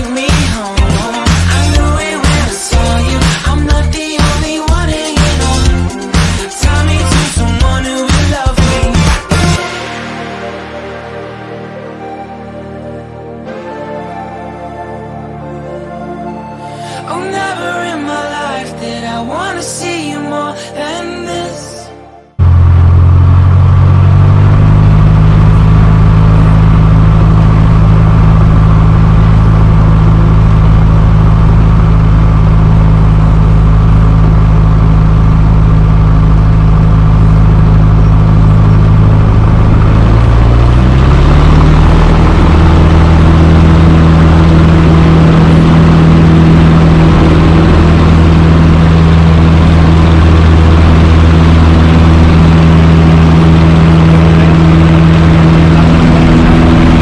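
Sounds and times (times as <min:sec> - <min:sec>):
light aircraft engine droning: 0:22.4 - 0:57.0.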